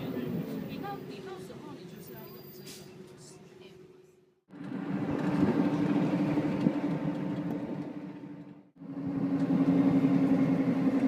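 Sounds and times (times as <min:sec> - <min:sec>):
vehicle engine drone: 0:04.5 - 0:11.0.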